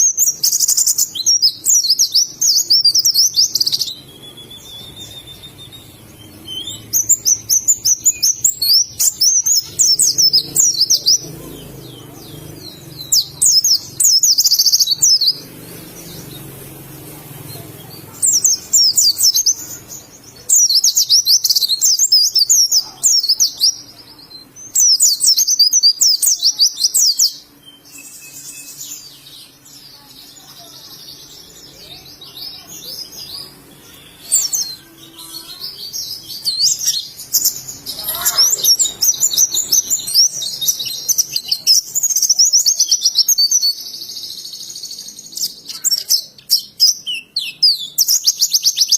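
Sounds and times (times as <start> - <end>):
bird twittering: 0.0 - 16.5.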